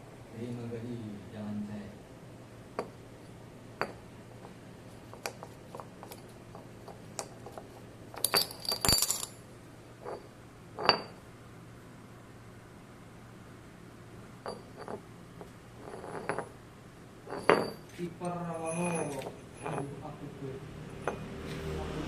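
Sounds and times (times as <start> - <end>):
metal parts clinking and tapping: 5.2 - 9.4, 17.3 - 18.0.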